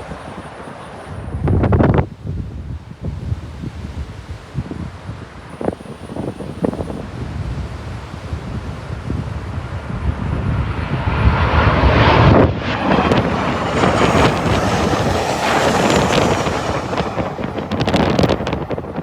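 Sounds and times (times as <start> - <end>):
high jet whine: 0.0 - 2.1, 9.2 - 19.0
jet flying low overhead: 0.0 - 19.0
wind buffeting microphone: 0.0 - 19.0.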